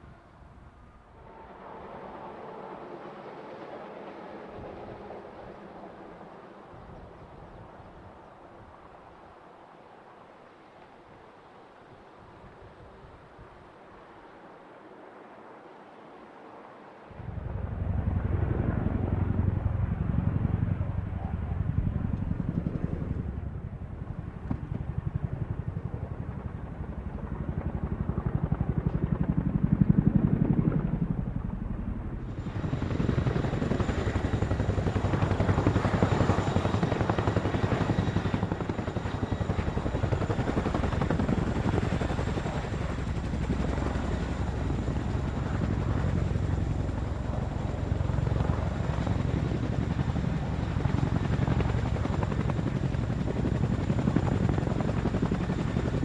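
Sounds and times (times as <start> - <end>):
helicopter rotor beat: 16.6 - 56.0.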